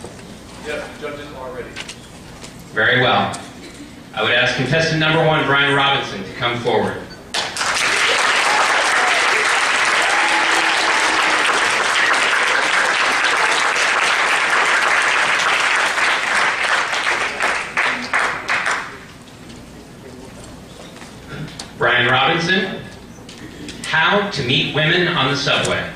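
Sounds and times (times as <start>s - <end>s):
audience applauding: 7.3s - 19.0s.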